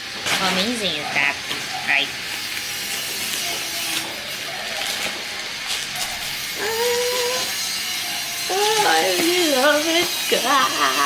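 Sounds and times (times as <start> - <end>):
packaging rustling and crinkling: 1.3 - 6.4.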